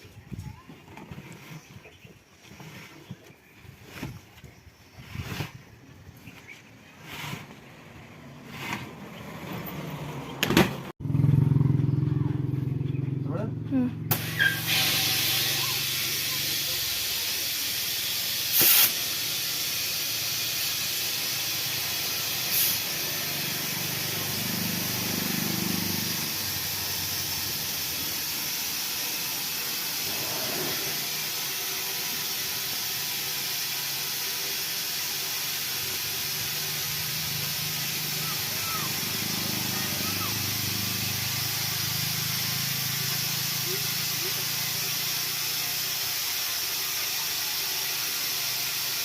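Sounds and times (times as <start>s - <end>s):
compressed air hissing: 14.1s - 49.0s.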